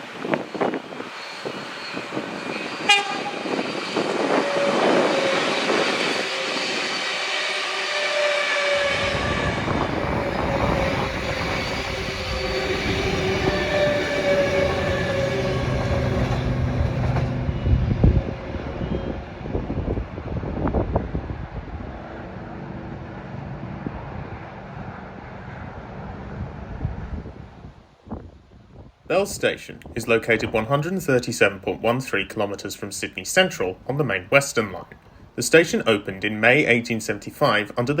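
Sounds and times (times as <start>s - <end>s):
wind buffeting microphone: 0.0s - 7.3s, 8.6s - 29.1s
train wheels on rails: 0.0s - 20.0s
train whining tone: 0.0s - 20.8s.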